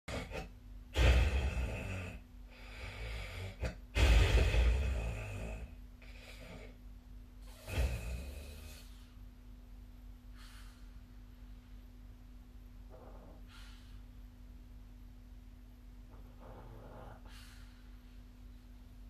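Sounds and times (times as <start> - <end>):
loud snores: 0.1 - 6.8, 7.4 - 9.0, 16.1 - 17.6
quiet breaths: 0.1 - 19.0.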